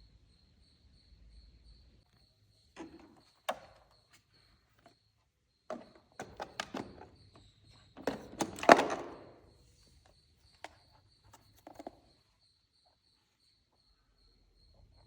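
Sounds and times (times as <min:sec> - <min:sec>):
clicks and knocks of handling: 0:02.8 - 0:04.2, 0:05.7 - 0:09.4.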